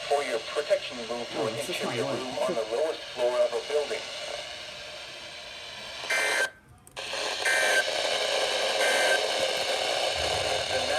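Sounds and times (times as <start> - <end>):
radio hiss: 0.0 - 5.0, 8.6 - 10.9.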